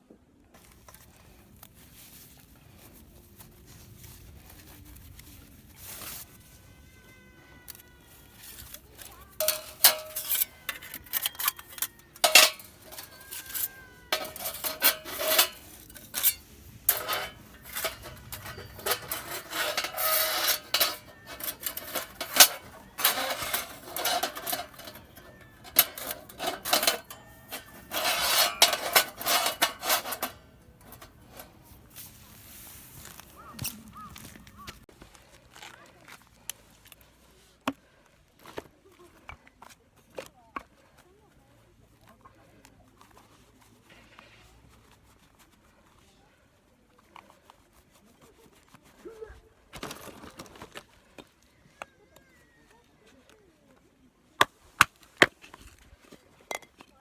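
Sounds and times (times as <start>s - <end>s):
hard objects clinking and clattering: 7.7s - 31.9s, 54.4s - 57.0s.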